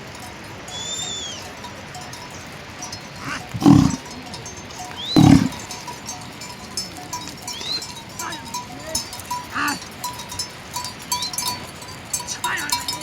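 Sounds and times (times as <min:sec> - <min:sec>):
bird chirps: 0:00.7 - 0:01.5, 0:04.8 - 0:05.6
farm animal low calls: 0:03.2 - 0:04.1, 0:04.9 - 0:05.7, 0:09.5 - 0:09.8.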